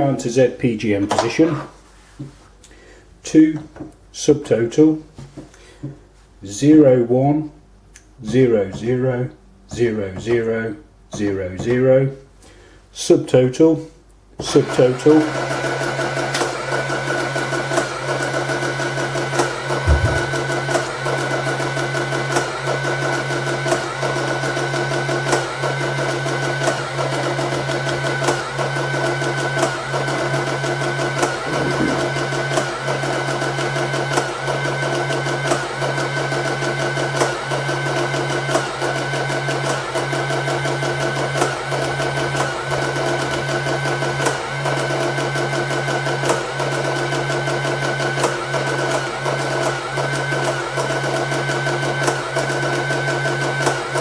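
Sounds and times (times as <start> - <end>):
receipt printer motor whirr: 14.6 - 54.0.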